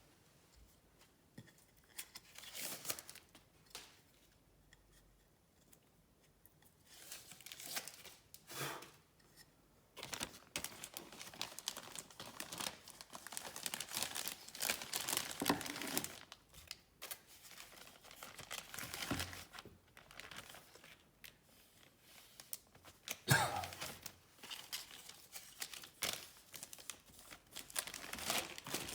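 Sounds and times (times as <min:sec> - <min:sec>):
plastic crinkling and rustling: 0:01.9 - 0:04.3, 0:06.9 - 0:08.4, 0:10.0 - 0:28.9.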